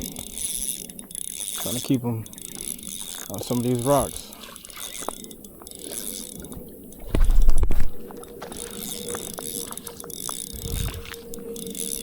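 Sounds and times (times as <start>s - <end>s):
small clicks and rattles: 0.0s - 12.0s
loud low rumble: 10.6s - 11.2s.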